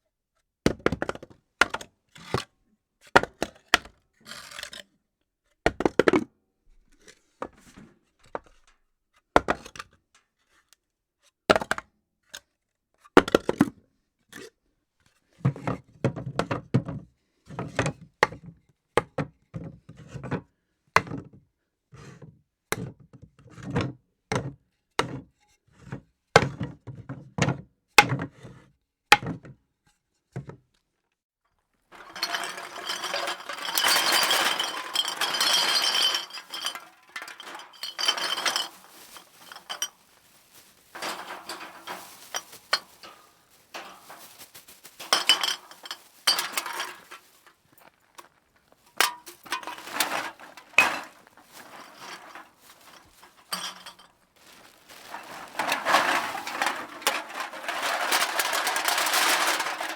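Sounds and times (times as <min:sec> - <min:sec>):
dense clattering of dumped objects: 0:31.9 - 0:47.6, 0:48.9 - 0:59.9
short rattle: 0:32.0 - 0:47.6.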